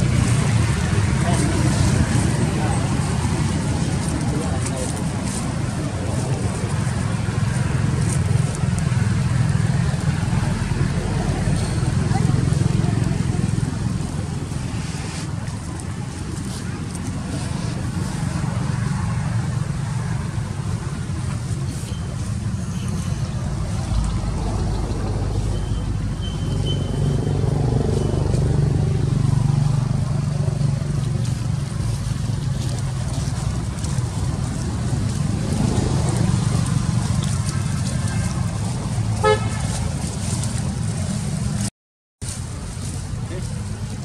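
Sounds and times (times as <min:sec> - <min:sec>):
low rumble of traffic: 0:00.0 - 0:44.0
car horn toot: 0:39.2 - 0:39.6.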